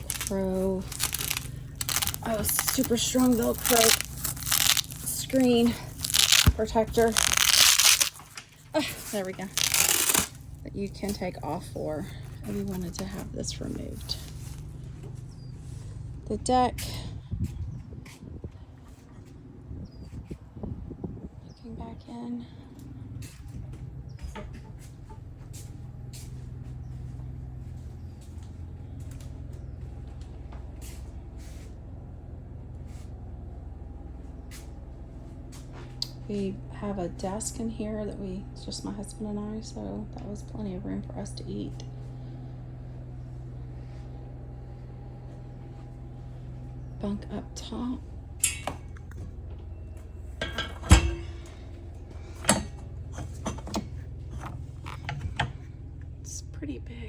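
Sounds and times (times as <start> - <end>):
low machine hum: 0.0 - 57.0
sharp clicks and knocks: 52.4 - 55.6.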